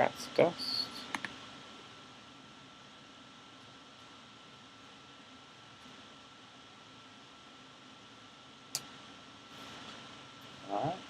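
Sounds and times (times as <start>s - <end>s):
faint steady hiss: 0.0s - 11.0s
soft clicks: 0.9s - 1.4s.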